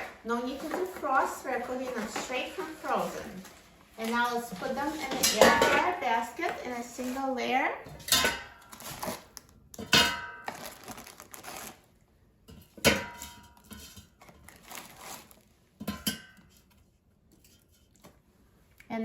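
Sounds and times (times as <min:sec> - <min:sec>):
food clinking in metal basket: 0:00.0 - 0:07.2.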